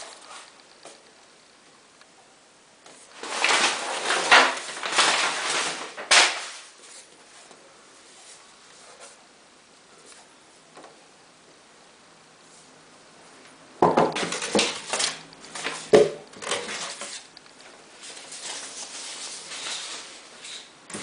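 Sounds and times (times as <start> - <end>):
packaging rustling and scraping: 0.0 - 0.6, 2.9 - 7.4, 14.2 - 21.0.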